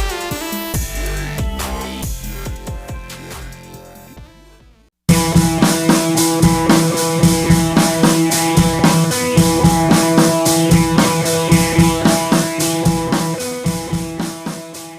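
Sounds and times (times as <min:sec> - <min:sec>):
upbeat band music with drums: 0:05.1 - 0:14.9.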